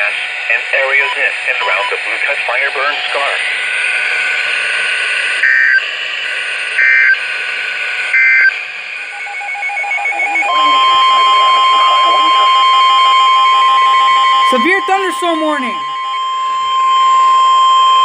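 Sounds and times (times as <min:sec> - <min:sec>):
steady alarm tone: 0:03.1 - 0:18.0
two-tone digital data bursts: 0:06.8 - 0:07.2, 0:08.2 - 0:16.8
faint pulsing tone: 0:09.0 - 0:18.0
radio hiss: 0:10.3 - 0:14.0.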